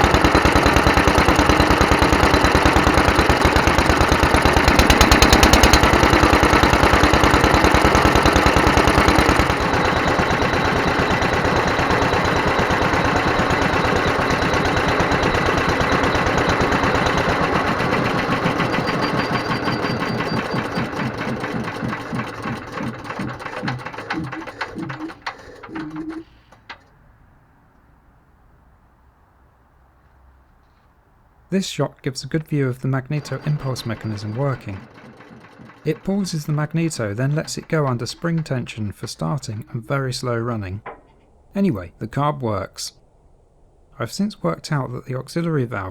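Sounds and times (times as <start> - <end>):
single-cylinder engine running: 0.0 - 26.9, 32.3 - 41.1
engine click: 0.0 - 27.0, 32.6 - 41.4.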